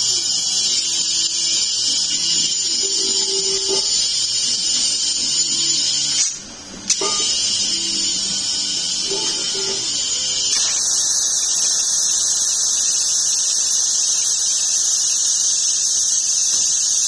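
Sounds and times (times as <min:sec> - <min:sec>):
high-pitched power tool running: 0:00.0 - 0:17.0
power tool click: 0:10.6 - 0:10.9.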